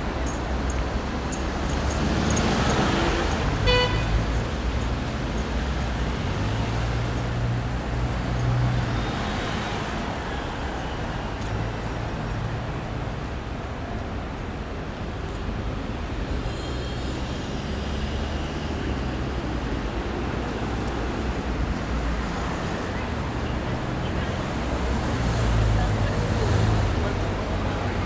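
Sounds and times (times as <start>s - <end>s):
traffic rumble: 0.0s - 28.0s
car horn toot: 3.6s - 4.2s.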